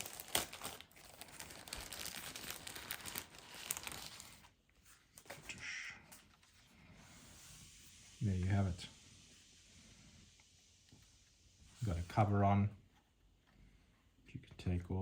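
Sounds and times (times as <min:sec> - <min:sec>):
packaging crinkling and rustling: 0:00.0 - 0:05.4.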